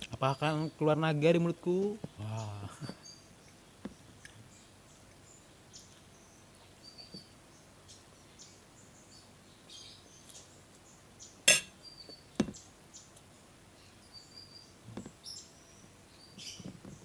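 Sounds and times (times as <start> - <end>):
faint bird chirps: 0.0 - 17.0
metal utensil clinking on plate: 11.5 - 11.7.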